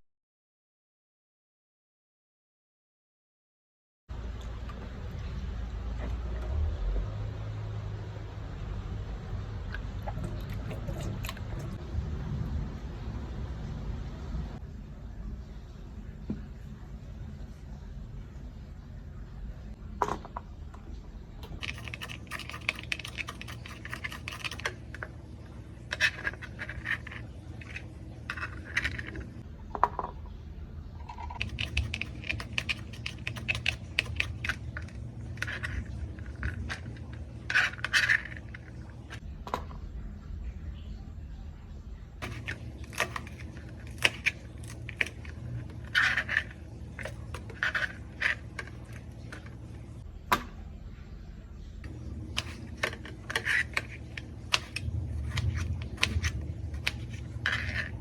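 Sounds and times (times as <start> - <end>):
low steady hum: 4.1 - 58.0
kitchen utensils scraping and clicking: 9.7 - 11.8, 21.4 - 30.2, 31.0 - 39.8, 42.2 - 50.5, 51.8 - 58.0.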